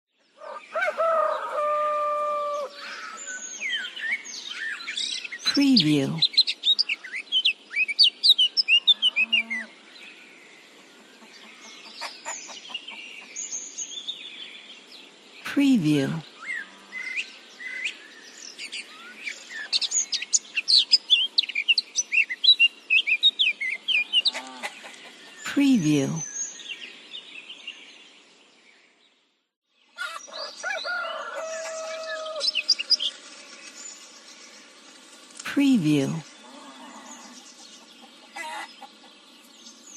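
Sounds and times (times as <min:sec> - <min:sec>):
rooster crowing: 0:00.4 - 0:03.2, 0:30.1 - 0:32.6
small songbirds chirping: 0:02.7 - 0:39.9
farmyard ambience: 0:07.7 - 0:14.0, 0:20.6 - 0:26.2, 0:29.9 - 0:33.8, 0:34.6 - 0:39.9.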